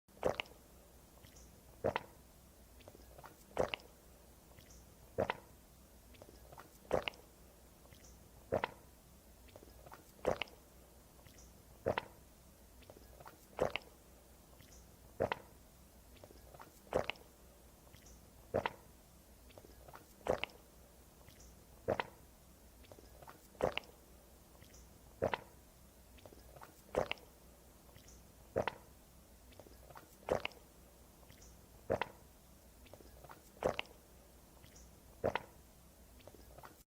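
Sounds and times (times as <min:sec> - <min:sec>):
woman gulping water: 0:00.1 - 0:00.6, 0:01.2 - 0:02.2, 0:02.8 - 0:03.9, 0:05.2 - 0:05.5, 0:06.2 - 0:07.3, 0:07.9 - 0:08.9, 0:09.5 - 0:10.6, 0:11.8 - 0:12.2, 0:12.8 - 0:14.0, 0:15.2 - 0:15.5, 0:16.2 - 0:17.3, 0:18.6 - 0:18.9, 0:19.5 - 0:20.6, 0:21.3 - 0:22.2, 0:22.8 - 0:24.0, 0:25.2 - 0:25.6, 0:26.2 - 0:28.9, 0:29.5 - 0:30.7, 0:31.9 - 0:32.2, 0:32.9 - 0:34.0, 0:34.6 - 0:35.6
wet mouth clicks: 0:00.2 - 0:00.6, 0:01.2 - 0:02.2, 0:02.8 - 0:03.9, 0:04.6 - 0:05.5, 0:06.1 - 0:07.3, 0:07.9 - 0:08.8, 0:09.5 - 0:10.6, 0:11.2 - 0:12.2, 0:12.8 - 0:14.0, 0:14.6 - 0:15.5, 0:16.1 - 0:17.3, 0:17.9 - 0:18.8, 0:19.5 - 0:20.6, 0:21.2 - 0:22.2, 0:22.8 - 0:24.0, 0:24.6 - 0:25.6, 0:26.2 - 0:28.9, 0:29.5 - 0:30.6, 0:31.3 - 0:32.2, 0:32.8 - 0:34.0, 0:34.6 - 0:35.6.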